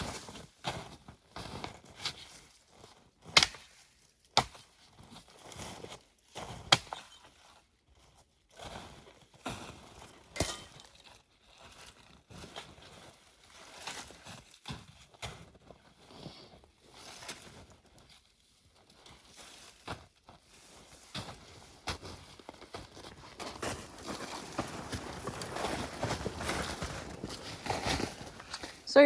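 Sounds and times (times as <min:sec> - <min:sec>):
rustling and crunching branches: 0:16.8 - 0:29.0.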